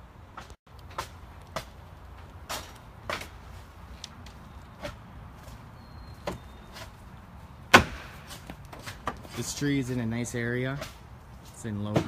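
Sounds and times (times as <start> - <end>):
sharp knocks: 7.7 - 8.3.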